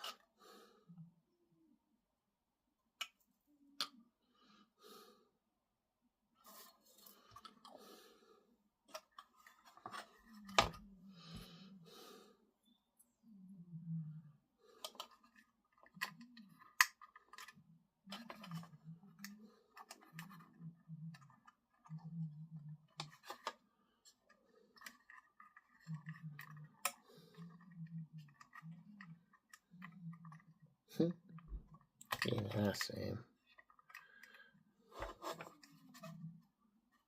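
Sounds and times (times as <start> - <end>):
plastic parts clicking: 14.8 - 22.0, 31.4 - 34.4.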